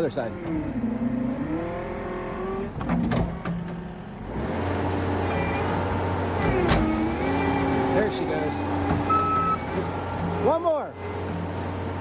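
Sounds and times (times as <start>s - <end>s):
skid steer engine revving: 0.0s - 12.0s.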